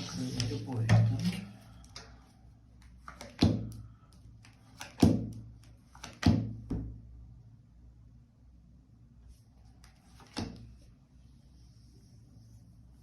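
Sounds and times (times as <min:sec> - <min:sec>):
cards clicking on a table: 0:02.8 - 0:03.8, 0:04.4 - 0:06.4.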